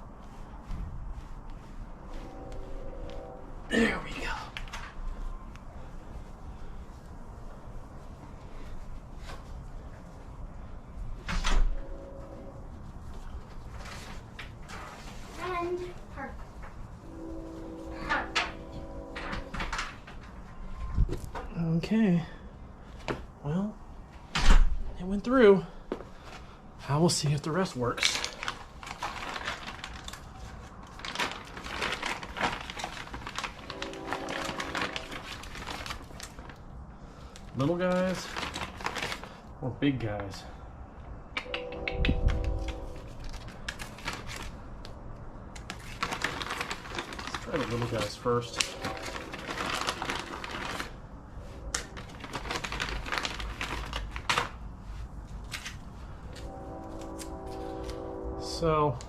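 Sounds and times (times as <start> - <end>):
plastic packaging rustling: 27.8 - 39.6, 42.2 - 58.0.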